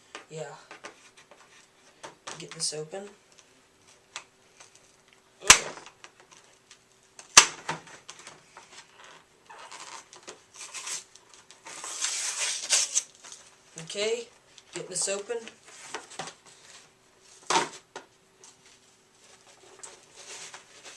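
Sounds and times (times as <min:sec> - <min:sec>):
packaging rustling and scraping: 0:08.0 - 0:13.6, 0:15.5 - 0:20.9.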